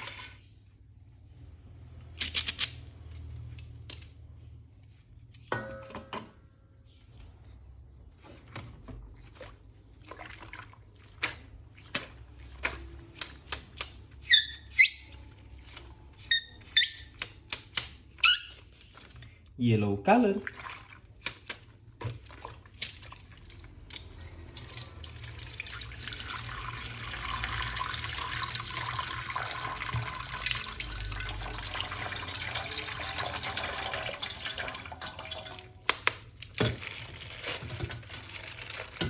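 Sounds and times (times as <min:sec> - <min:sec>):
plastic toys clicking and tapping: 0:17.1 - 0:18.2.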